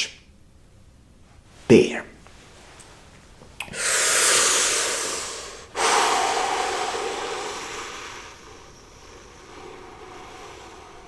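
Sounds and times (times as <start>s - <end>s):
noisy breaths close to microphone: 3.7s - 11.0s.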